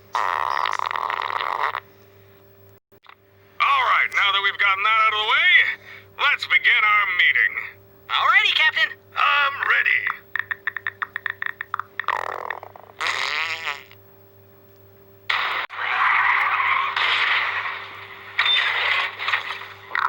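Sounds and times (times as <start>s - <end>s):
loud noisy stomach growl: 0.1s - 1.8s, 10.8s - 14.0s
stomach groan: 10.8s - 14.0s.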